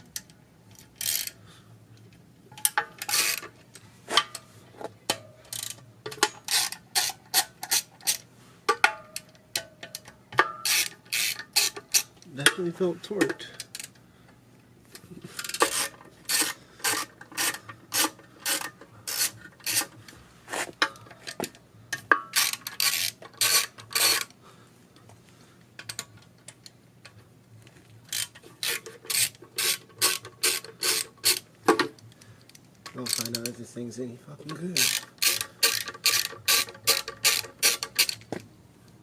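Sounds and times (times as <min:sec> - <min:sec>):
ratchet wrench clicking: 0:00.1 - 0:01.4, 0:02.6 - 0:03.5, 0:05.5 - 0:08.2, 0:09.2 - 0:12.2, 0:13.4 - 0:14.0, 0:15.4 - 0:20.0, 0:22.0 - 0:24.3, 0:28.1 - 0:32.1, 0:32.9 - 0:33.6, 0:34.5 - 0:38.4.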